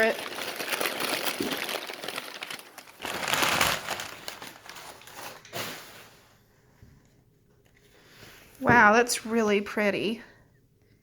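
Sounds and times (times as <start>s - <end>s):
paper wrapping crinkling: 0.0s - 6.3s.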